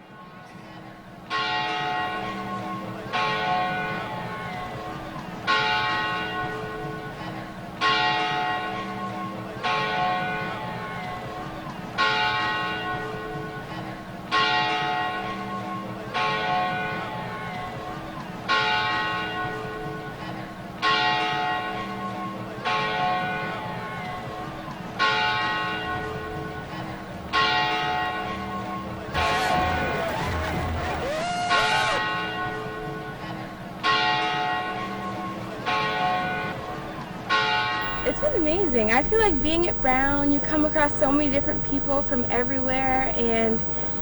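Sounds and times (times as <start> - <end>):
large church bell tolling: 1.3 - 7.2, 7.8 - 11.4, 12.0 - 20.2, 20.8 - 29.9, 33.8 - 39.6.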